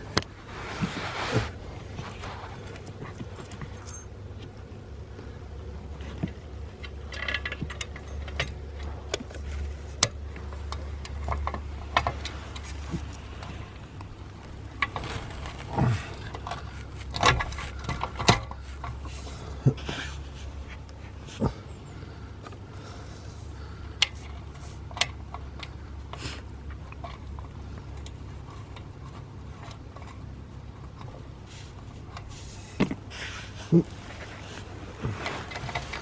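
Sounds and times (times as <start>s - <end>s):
low steady hum: 0.0s - 36.0s
metal hand tools clinking: 2.7s - 4.2s.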